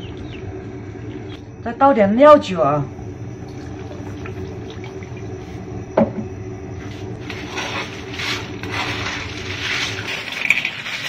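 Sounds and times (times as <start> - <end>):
steady low hum: 0.0 - 11.0
pot of water heating on stove: 2.7 - 11.0.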